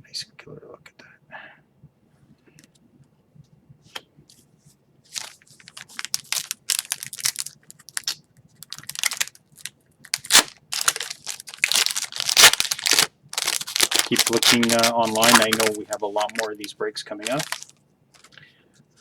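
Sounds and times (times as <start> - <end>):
loud crack of wrapper: 5.1 - 18.4
wrapper crinkling and tearing: 5.1 - 18.4.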